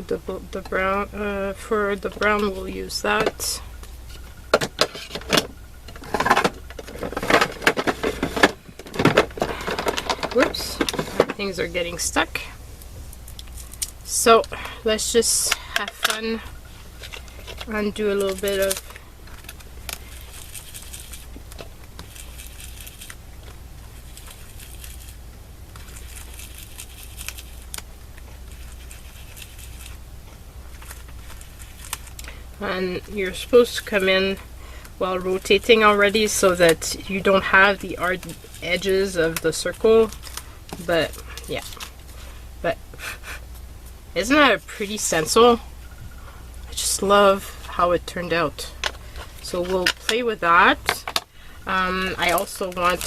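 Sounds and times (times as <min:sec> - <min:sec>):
steady low hum: 0:00.0 - 0:53.0
scraping and rustling: 0:02.0 - 0:14.4, 0:15.5 - 0:34.5.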